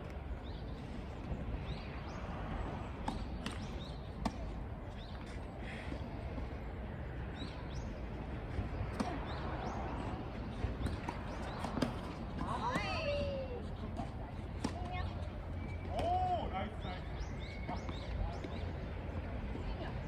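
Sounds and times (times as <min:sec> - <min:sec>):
faint birds chirping: 0:00.1 - 0:20.0.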